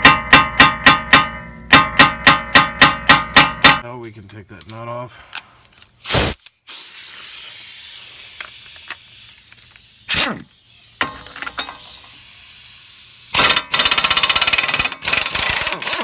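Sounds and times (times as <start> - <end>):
impact wrench hammering: 0.0 - 3.8, 13.4 - 16.0
compressed air hissing: 6.0 - 13.6.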